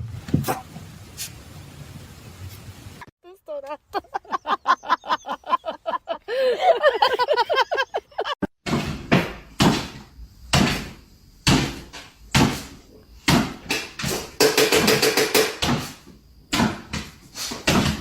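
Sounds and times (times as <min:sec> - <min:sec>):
sharp knocks and bangs: 0:08.6 - 0:18.0.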